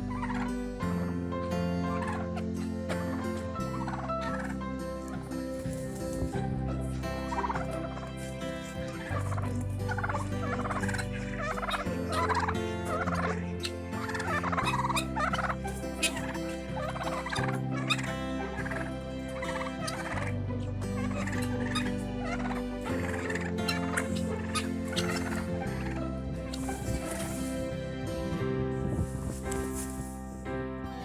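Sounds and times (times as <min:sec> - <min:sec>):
turkeys gobbling: 0:00.1 - 0:00.5, 0:01.9 - 0:02.2, 0:03.8 - 0:05.2, 0:07.3 - 0:08.0, 0:09.1 - 0:27.4.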